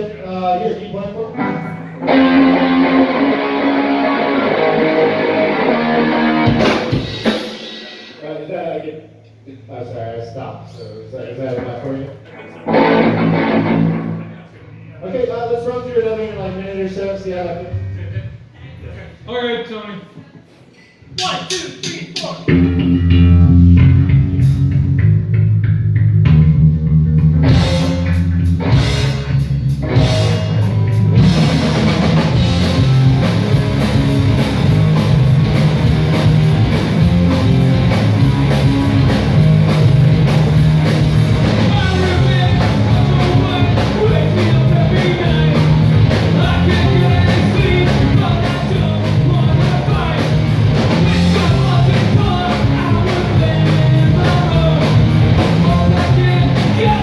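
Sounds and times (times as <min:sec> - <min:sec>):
live rock band playing: 0:01.1 - 0:08.2, 0:12.7 - 0:14.4, 0:22.5 - 0:57.0
person singing: 0:01.4 - 0:05.6, 0:41.6 - 0:50.5, 0:51.1 - 0:57.0.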